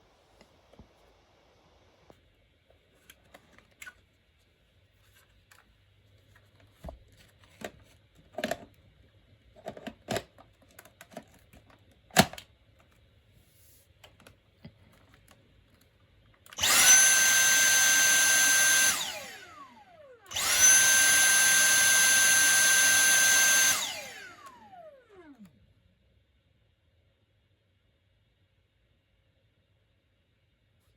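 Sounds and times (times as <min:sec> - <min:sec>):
cordless vacuum motor whining: 0:16.5 - 0:25.6.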